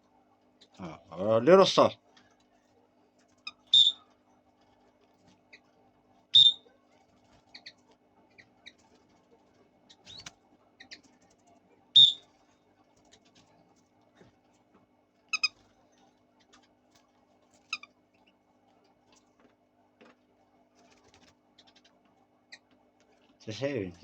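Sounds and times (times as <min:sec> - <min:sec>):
lovebirds chirping: 0:03.4 - 0:04.1, 0:06.3 - 0:06.6, 0:07.4 - 0:08.8, 0:09.8 - 0:11.1, 0:11.9 - 0:12.3, 0:15.2 - 0:16.6, 0:17.6 - 0:18.4
stuttering bird call: 0:03.5 - 0:04.0, 0:12.0 - 0:12.2.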